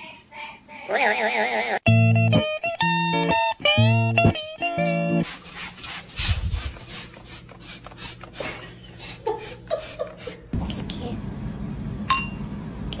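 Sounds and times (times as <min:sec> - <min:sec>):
chuckling: 0:08.4 - 0:10.5.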